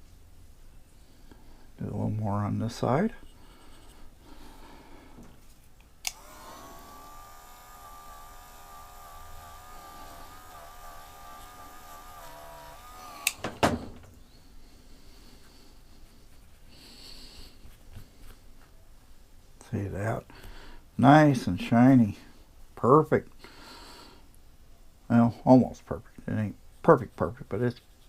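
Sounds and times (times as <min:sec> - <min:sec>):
rotary tool switch clicks: 0:06.0 - 0:13.6
rotary tool whining: 0:06.0 - 0:14.2.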